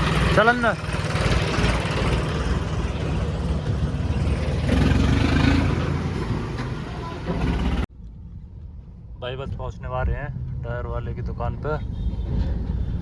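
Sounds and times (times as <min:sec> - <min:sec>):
tractor diesel engine rumbling: 0:00.0 - 0:07.9.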